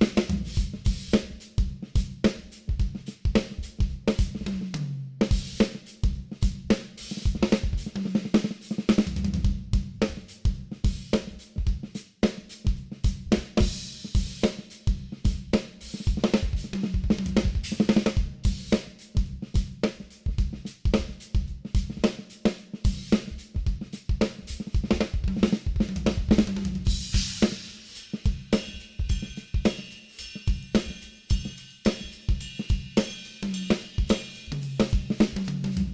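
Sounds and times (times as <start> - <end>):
drum kit groove: 0.0 - 35.9
crashing cymbals: 26.9 - 35.9.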